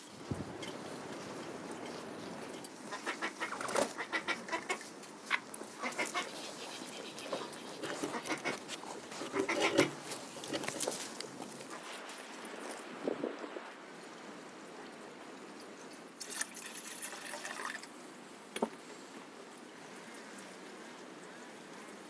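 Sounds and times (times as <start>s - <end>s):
chickens clucking: 2.5s - 11.9s.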